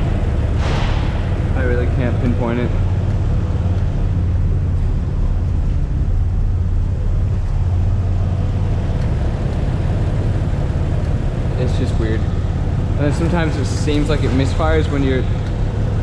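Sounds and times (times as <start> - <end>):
car engine idling: 0.0 - 16.0.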